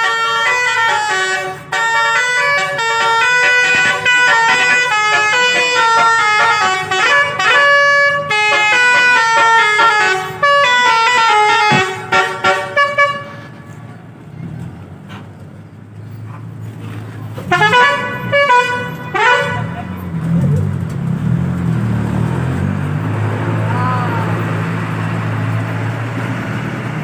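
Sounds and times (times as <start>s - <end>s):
musical bus horn playing a tune: 0.0s - 13.9s, 17.4s - 20.1s.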